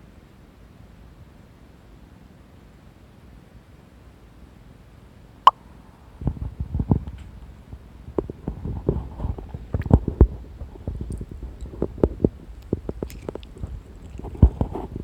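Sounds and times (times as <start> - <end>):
stomach rumbling: 8.2 - 15.0.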